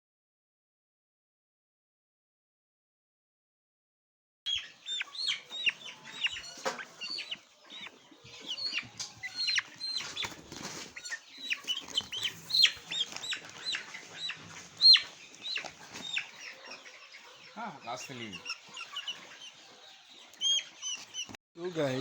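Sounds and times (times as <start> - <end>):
chicks peeping: 4.5 - 22.0
birds rustling and flapping: 7.8 - 16.8.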